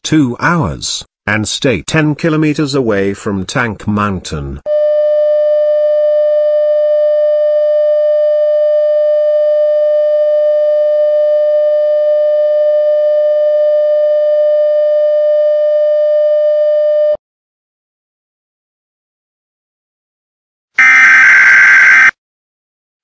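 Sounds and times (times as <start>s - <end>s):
emergency alert tone: 20.8s - 22.1s.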